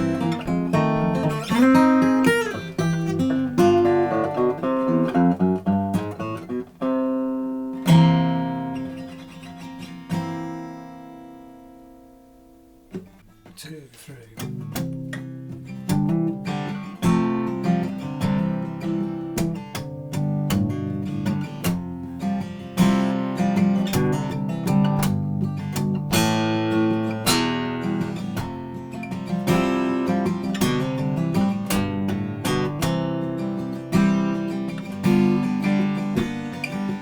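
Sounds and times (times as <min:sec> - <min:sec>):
acoustic guitar strumming chords: 0:00.0 - 0:37.0.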